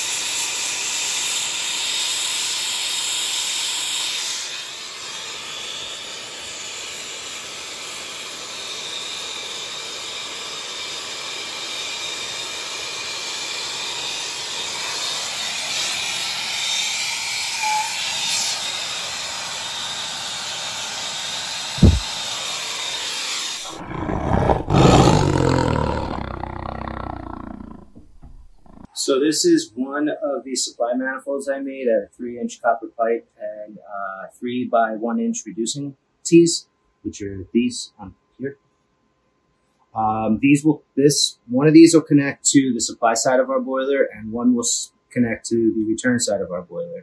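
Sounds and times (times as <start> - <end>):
low rumble: 21.8 - 22.0, 26.0 - 28.9
short thump: 21.8 - 22.0.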